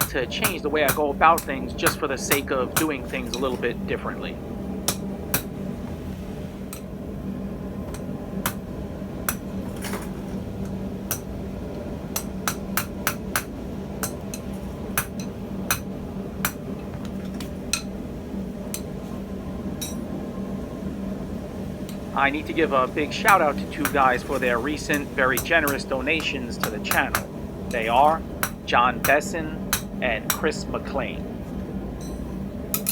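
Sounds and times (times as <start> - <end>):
hammer striking steel on anvil: 0.0 - 3.7, 4.8 - 5.6, 7.9 - 10.3, 11.0 - 11.4, 12.1 - 17.9, 19.8 - 20.0, 23.3 - 30.6, 32.0 - 32.9
low hum: 0.0 - 32.9.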